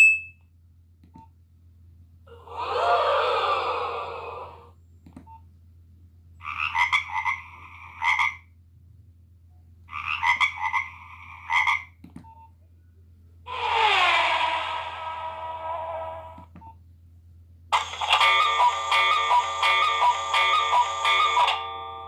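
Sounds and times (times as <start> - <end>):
phone ringtone rapid pulses: 17.8 - 22.0.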